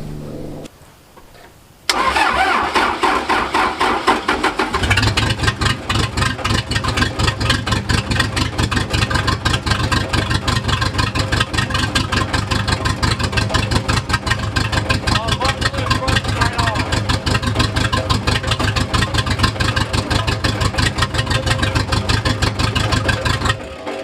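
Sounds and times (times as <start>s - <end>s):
diesel engine cranking: 0.0s - 0.7s, 1.9s - 24.0s
diesel engine running: 0.0s - 0.7s, 1.9s - 24.0s.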